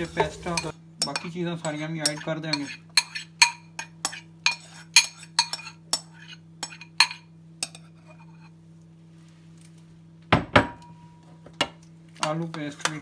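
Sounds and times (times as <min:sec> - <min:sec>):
metal spoon clinking on cookware: 0:00.0 - 0:08.4.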